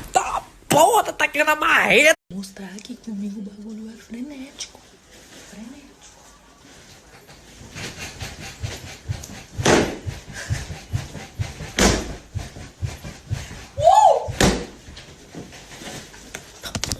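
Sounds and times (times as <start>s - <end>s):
rhythmic banging against a wall: 7.2s - 15.8s.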